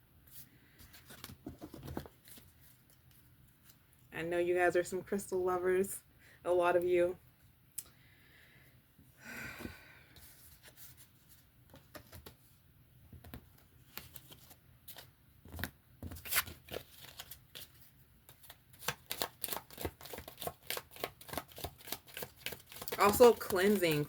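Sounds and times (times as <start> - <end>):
cards being shuffled: 13.2 - 24.0.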